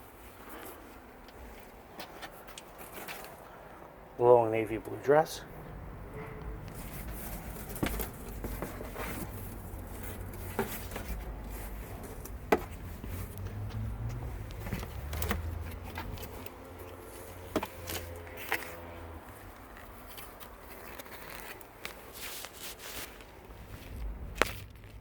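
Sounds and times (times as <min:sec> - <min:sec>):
fabric rustling: 0:06.2 - 0:25.0.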